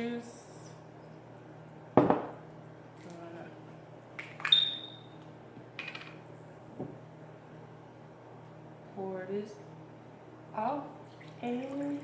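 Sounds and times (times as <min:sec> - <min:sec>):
dull knock on counter: 0:02.0 - 0:02.3.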